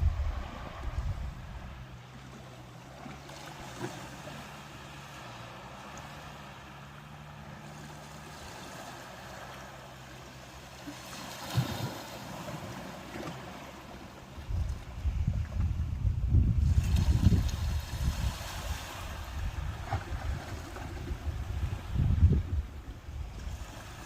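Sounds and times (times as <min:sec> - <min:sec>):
wind buffeting microphone: 0:00.0 - 0:02.1, 0:14.3 - 0:24.0
ocean surf washing: 0:00.0 - 0:24.0.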